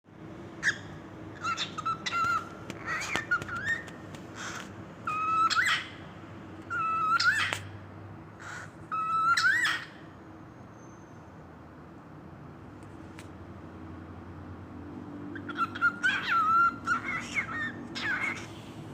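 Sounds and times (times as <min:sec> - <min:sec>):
cockatiel whistling: 0:00.6 - 0:04.0, 0:05.1 - 0:05.9, 0:06.7 - 0:07.5, 0:08.9 - 0:10.0, 0:15.4 - 0:18.5
cockatiel kissing sounds: 0:02.1 - 0:04.8.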